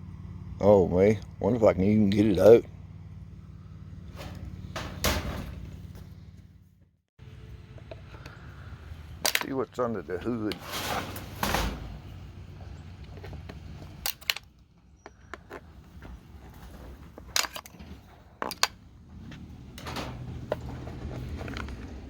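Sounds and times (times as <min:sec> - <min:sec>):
clicks and knocks of hand tools: 0:13.0 - 0:15.7, 0:17.2 - 0:18.8.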